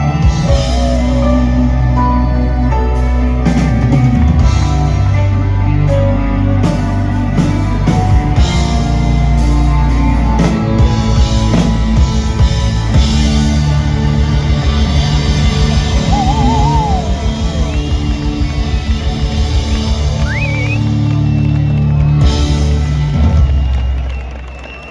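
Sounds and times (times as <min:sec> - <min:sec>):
rock band playing: 0:00.0 - 0:23.8
wavering lead line: 0:16.1 - 0:17.6.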